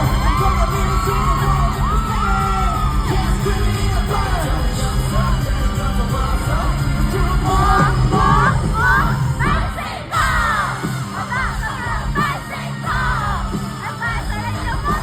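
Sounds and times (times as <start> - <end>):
people shouting: 0.0 - 4.6
live rock band playing: 0.0 - 15.0.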